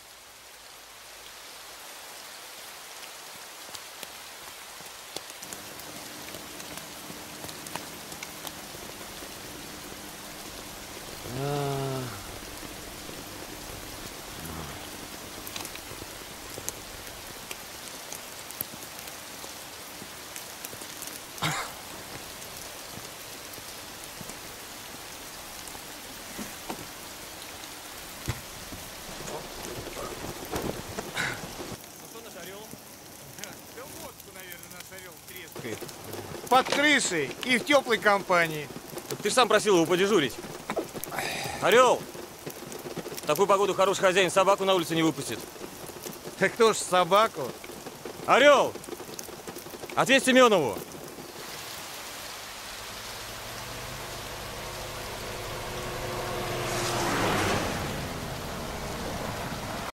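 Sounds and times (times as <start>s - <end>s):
steady rain falling: 0.0s - 59.9s
drips and clicks: 28.1s - 51.4s.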